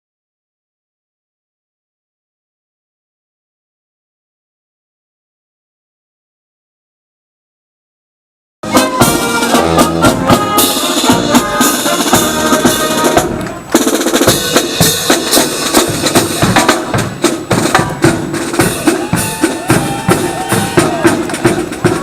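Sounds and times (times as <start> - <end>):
drum-led music: 8.6 - 22.0.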